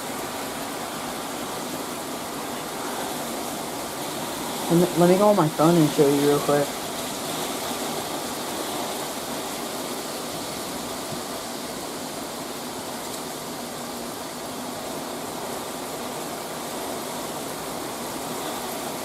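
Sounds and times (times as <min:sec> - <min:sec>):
torrential rain pouring: 0:00.0 - 0:19.0.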